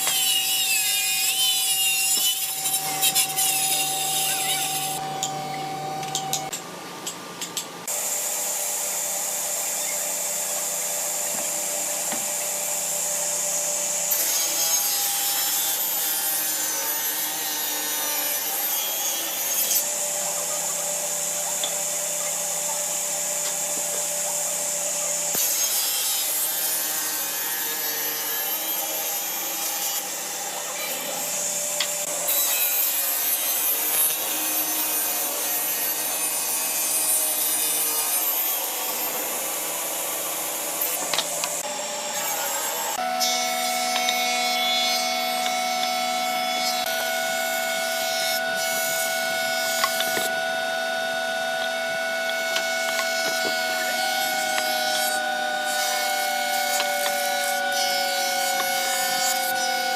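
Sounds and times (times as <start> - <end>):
tool rasping wood: 0.0 - 5.0.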